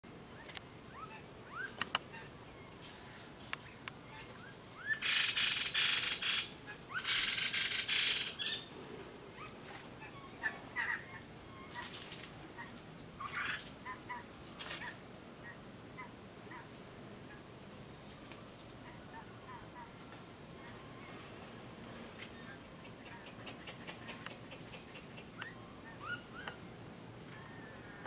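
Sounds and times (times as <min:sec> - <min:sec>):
harsh bird screeching calls: 0:04.8 - 0:08.7
birds chirping: 0:22.1 - 0:28.0.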